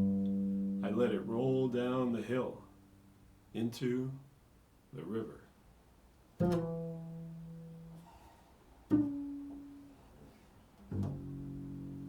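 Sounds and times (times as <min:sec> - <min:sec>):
plucked string instrument: 0:00.0 - 0:02.0, 0:06.4 - 0:12.0.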